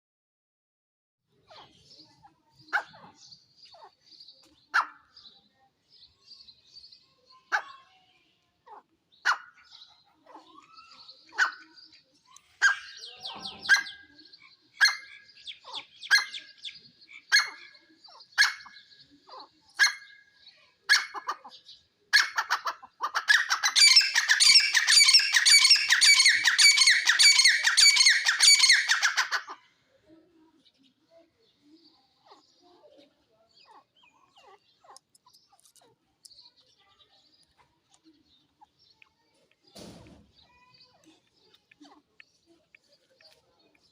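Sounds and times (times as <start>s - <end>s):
francolin calling: 23.8s - 29.2s.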